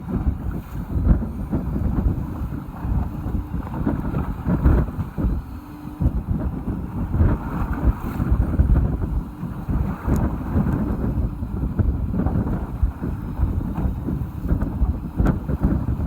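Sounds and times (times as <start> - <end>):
boat background noise: 0.0 - 16.0
wind buffeting microphone: 0.0 - 16.0.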